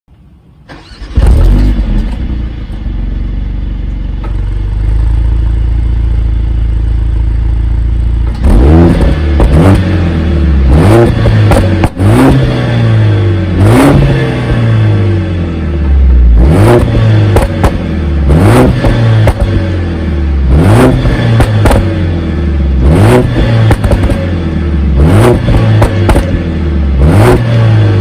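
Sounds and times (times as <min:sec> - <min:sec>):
car engine idling: 0:00.1 - 0:28.0
car engine starting: 0:00.2 - 0:28.0
sharp exhaust pops: 0:08.2 - 0:09.9, 0:10.9 - 0:12.6, 0:16.8 - 0:17.9, 0:18.6 - 0:19.6, 0:20.9 - 0:22.0, 0:23.1 - 0:24.3, 0:25.2 - 0:26.4.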